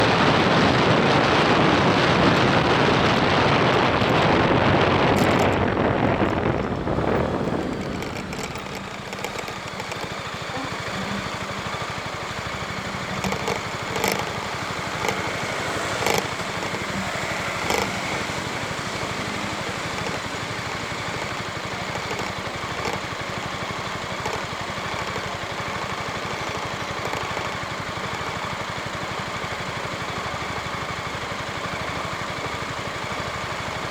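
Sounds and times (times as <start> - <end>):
wind rush on microphone: 0.0 - 9.3
motor scooter engine running: 0.0 - 33.9
sharp clicks: 3.7 - 23.3, 23.9 - 28.4.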